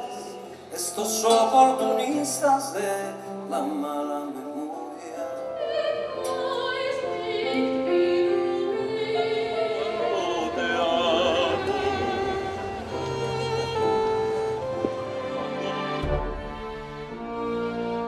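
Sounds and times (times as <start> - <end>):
operatic singing: 0.0 - 18.0
sustained accompaniment: 5.5 - 18.0.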